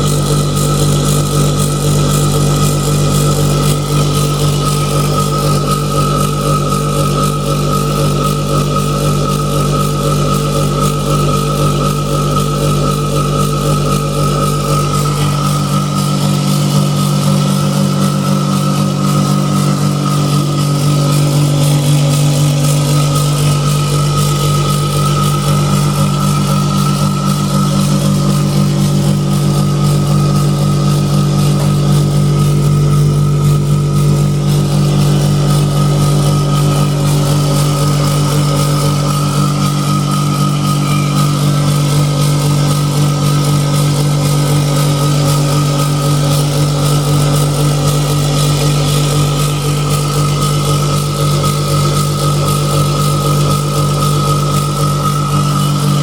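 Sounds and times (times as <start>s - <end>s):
heat pump compressor humming: 0.0s - 56.0s
high whine: 0.0s - 56.0s.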